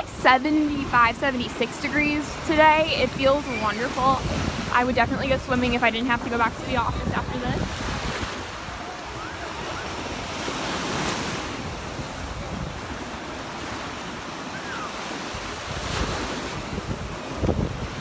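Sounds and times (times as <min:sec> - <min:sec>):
surf washing onto beach: 0:00.0 - 0:18.0
wind buffeting microphone: 0:00.0 - 0:18.0.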